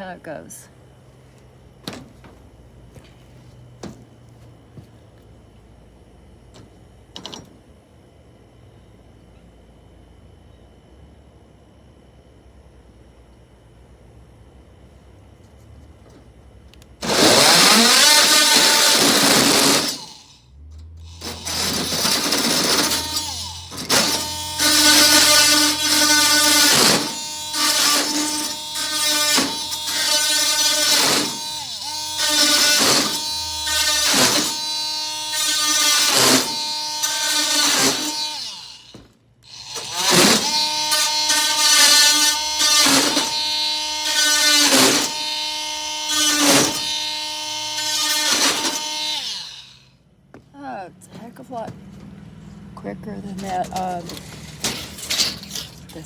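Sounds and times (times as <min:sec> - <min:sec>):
oscillating multi-tool buzzing: 0:17.0 - 0:50.0.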